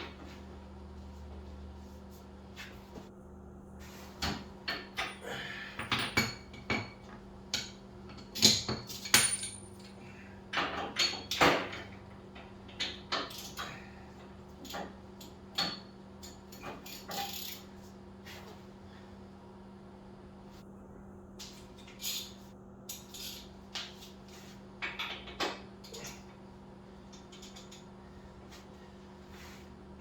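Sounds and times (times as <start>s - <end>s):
steady low hum: 0.0s - 30.0s
wrenches clinking on metal: 14.6s - 17.6s.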